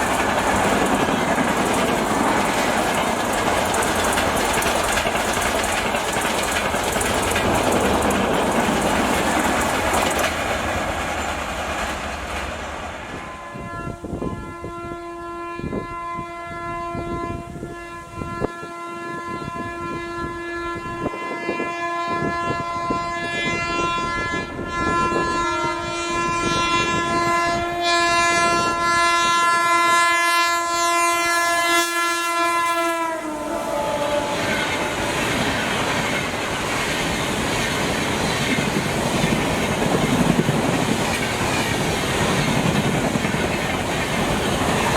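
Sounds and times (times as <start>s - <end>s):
wheels clacking on rail joints: 0.0s - 13.3s, 33.2s - 44.9s
train passing: 0.0s - 44.9s
locomotive horn blast: 13.1s - 36.3s.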